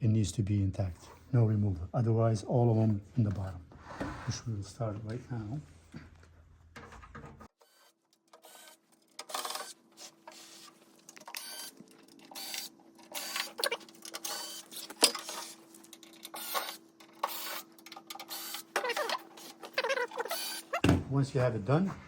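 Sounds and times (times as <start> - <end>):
power screwdriver whirring: 7.6 - 9.8, 11.2 - 11.7, 12.3 - 15.5, 16.3 - 20.8.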